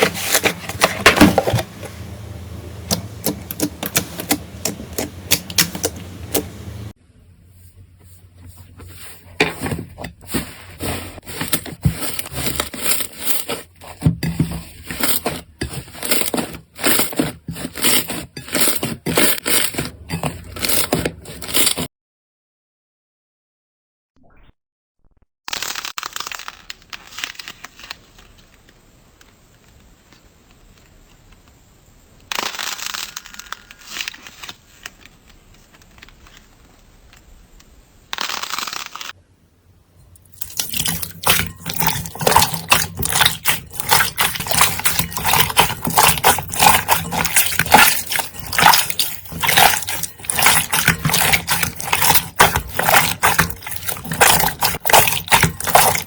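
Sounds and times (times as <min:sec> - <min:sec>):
slime squishing: 0:02.7 - 0:06.9, 0:07.6 - 0:21.9, 0:40.1 - 0:56.0.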